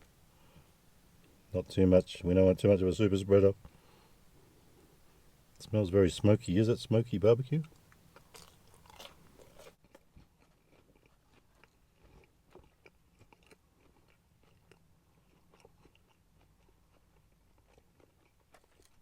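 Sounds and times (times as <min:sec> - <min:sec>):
faint chewing: 0:07.6 - 0:19.0.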